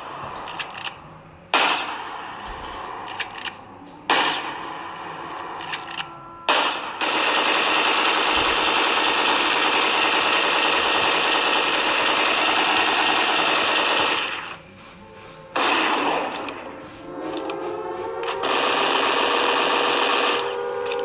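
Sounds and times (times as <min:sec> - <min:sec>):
distorted emergency alarm blast: 0:04.2 - 0:14.6, 0:15.6 - 0:21.0.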